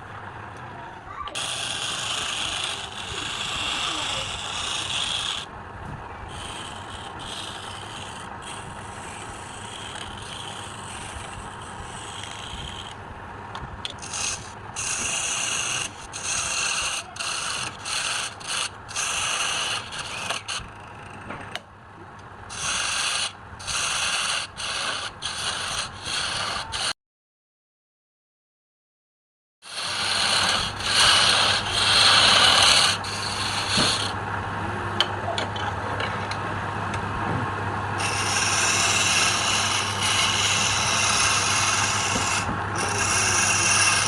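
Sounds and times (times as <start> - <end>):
abrasive rubbing wood on lathe: 1.3 - 5.6, 6.2 - 13.0, 13.8 - 21.6, 22.5 - 27.0, 29.7 - 34.3, 37.7 - 44.0.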